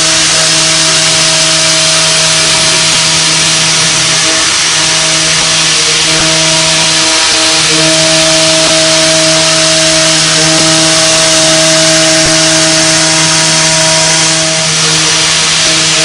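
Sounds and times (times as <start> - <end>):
cutting hiss: 0.0 - 16.0
milling machine whine: 0.0 - 16.0.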